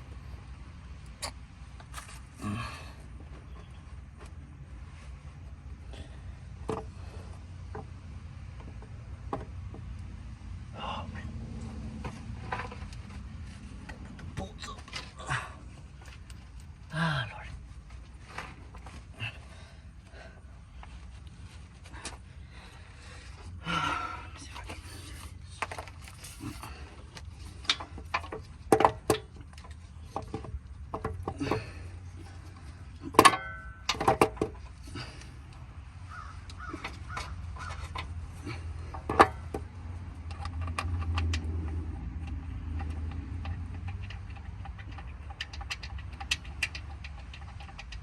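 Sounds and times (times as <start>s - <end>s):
metal clicks and clanks of tools: 24.5s - 48.0s.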